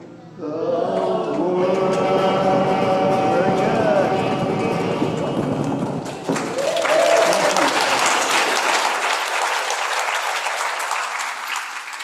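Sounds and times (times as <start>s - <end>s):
congregation applauding: 5.6s - 12.0s.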